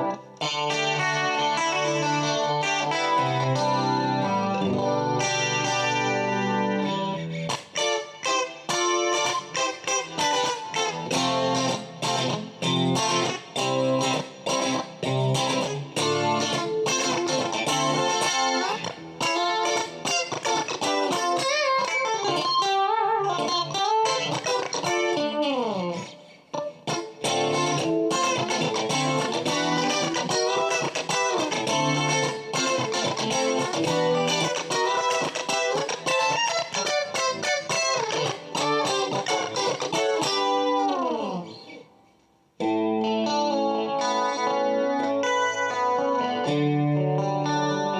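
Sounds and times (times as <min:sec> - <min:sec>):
clean electric guitar: 0:00.0 - 0:47.9.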